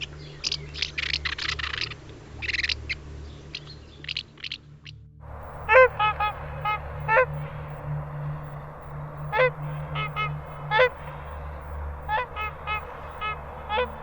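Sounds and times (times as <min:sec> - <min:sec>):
steady low hum: 0:00.0 - 0:14.0
goose honking: 0:05.3 - 0:14.0.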